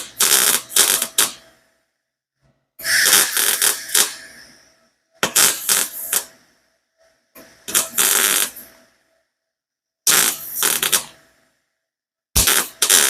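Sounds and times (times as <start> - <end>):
welding arc crackling: 2.8 - 4.6, 5.3 - 6.3, 7.7 - 8.6, 10.1 - 11.1, 12.4 - 13.0.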